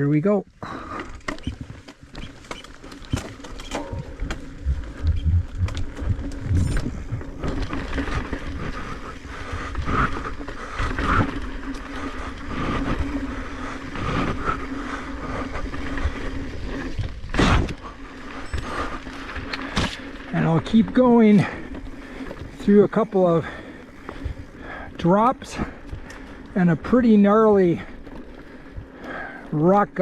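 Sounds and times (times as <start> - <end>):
bike rattling and knocking: 0.6 - 30.0
bike tyres rumbling over rock: 0.6 - 30.0
steady whir: 3.2 - 20.2.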